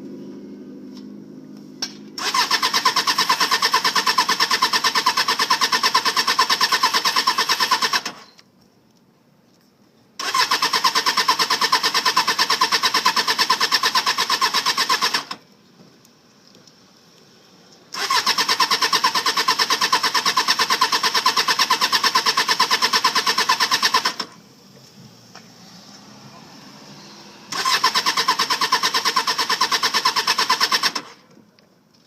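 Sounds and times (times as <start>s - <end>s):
motorcycle starter cranking: 1.8s - 8.4s, 10.2s - 15.5s, 17.9s - 24.4s, 27.5s - 31.3s.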